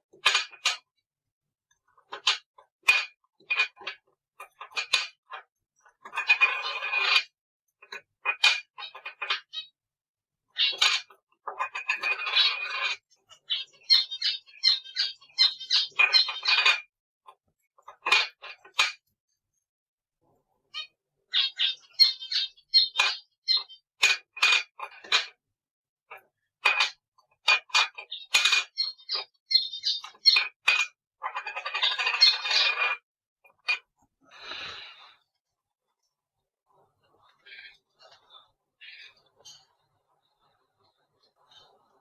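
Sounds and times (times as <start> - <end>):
cockatiel chirping: 13.5 - 16.6, 21.3 - 23.8, 28.2 - 30.5.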